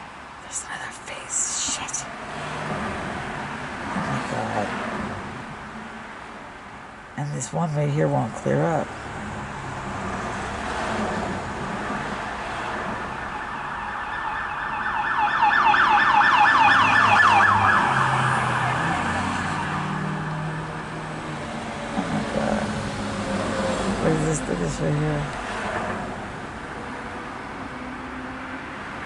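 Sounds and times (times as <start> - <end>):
low traffic rumble: 0.0 - 29.0
emergency vehicle siren: 12.0 - 24.6.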